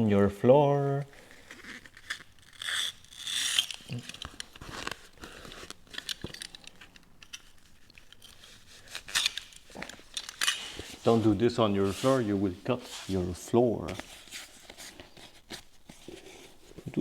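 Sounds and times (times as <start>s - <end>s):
velcro rasping and crinkling: 1.0s - 17.0s
scissors snipping velcro: 1.4s - 6.6s, 8.9s - 10.8s.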